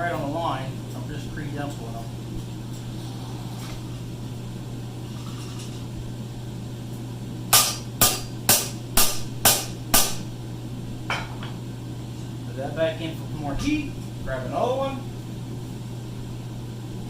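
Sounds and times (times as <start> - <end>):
steady low hum: 0.0 - 17.0
hammer striking steel on anvil: 7.5 - 10.3.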